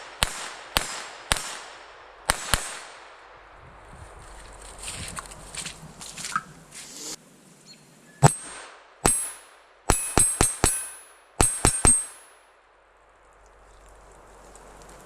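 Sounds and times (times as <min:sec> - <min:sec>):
pistol shots: 0:00.0 - 0:03.3, 0:08.2 - 0:12.3
metallic ring of steel target: 0:08.2 - 0:12.5.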